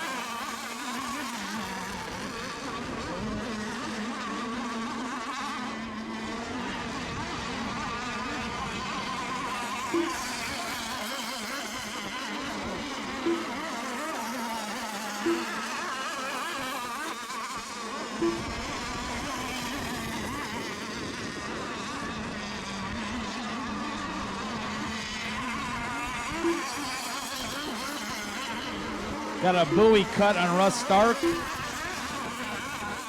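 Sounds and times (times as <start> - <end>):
model boat engines buzzing: 0.0 - 33.0
short beeps: 9.9 - 10.4, 13.2 - 13.6, 15.2 - 15.7, 18.2 - 18.6, 26.4 - 26.7, 29.5 - 31.5.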